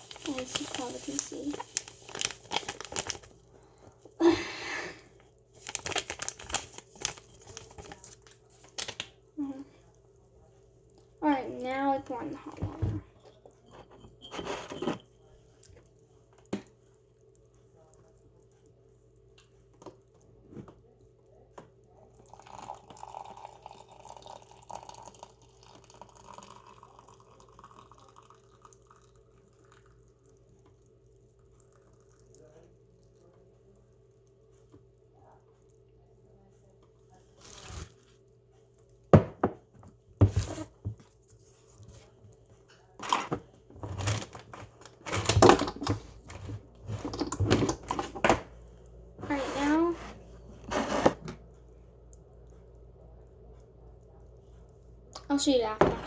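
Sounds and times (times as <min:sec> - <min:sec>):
crinkling: 0:00.0 - 0:03.5, 0:05.5 - 0:09.6
water pouring into mug: 0:22.1 - 0:30.7, 0:31.4 - 0:32.6.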